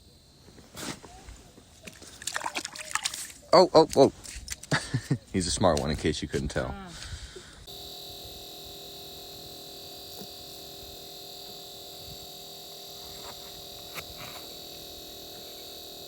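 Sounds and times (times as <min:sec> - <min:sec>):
low hum: 0:07.6 - 0:16.0
high-pitched electronic whine: 0:07.7 - 0:16.0.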